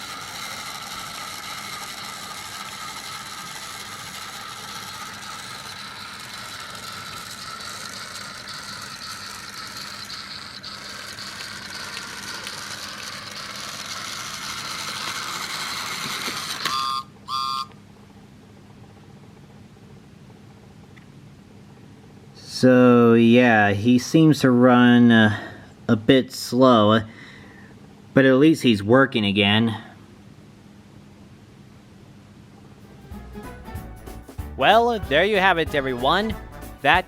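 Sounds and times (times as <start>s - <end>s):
toy train motor whirring: 0.0s - 17.8s, 33.4s - 37.0s.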